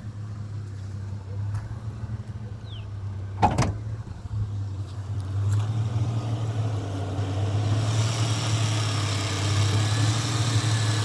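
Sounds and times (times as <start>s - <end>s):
car engine idling: 0.0s - 5.6s.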